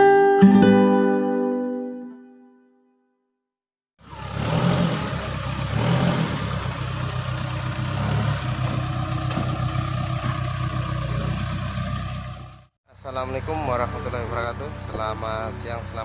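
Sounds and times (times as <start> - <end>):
diesel engine pulsing rumble: 4.0 - 16.0.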